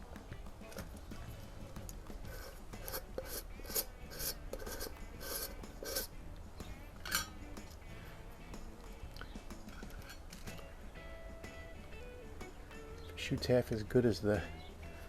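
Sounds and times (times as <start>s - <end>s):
rifle metallic clicks and scraping: 1.8s - 6.1s, 7.0s - 7.8s, 9.2s - 10.6s.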